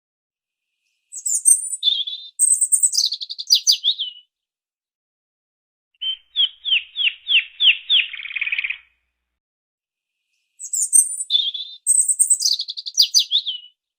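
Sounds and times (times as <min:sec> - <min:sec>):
songbird chirps and whistles: 0:00.9 - 0:04.3, 0:06.0 - 0:09.0, 0:10.4 - 0:13.8.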